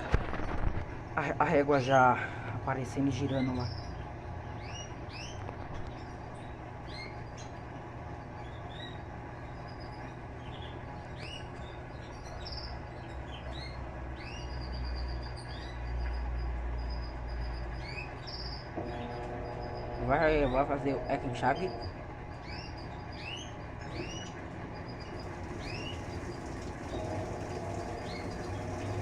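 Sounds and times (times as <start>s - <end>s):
washing machine humming: 0.0s - 29.0s
birds chirping: 1.2s - 29.0s.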